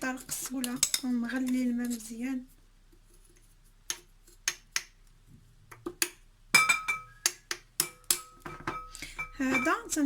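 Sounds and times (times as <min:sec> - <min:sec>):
metal spoon clinking on glass: 0:06.6 - 0:09.9.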